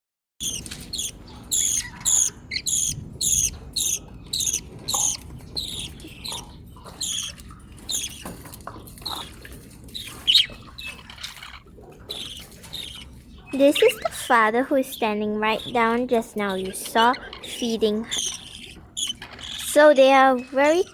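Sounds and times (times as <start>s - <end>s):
budgerigar chicks begging calls: 0.4s - 8.4s, 9.0s - 19.8s.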